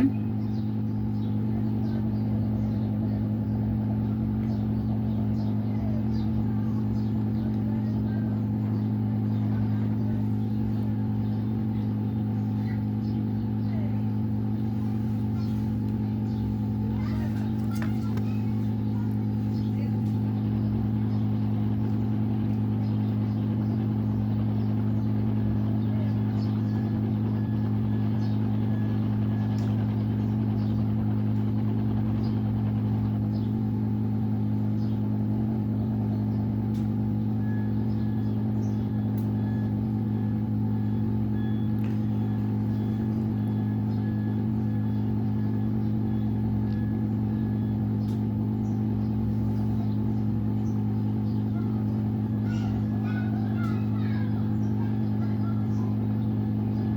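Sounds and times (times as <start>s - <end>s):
hot air station hum: 0.0s - 56.9s
blower hissing: 6.3s - 25.6s.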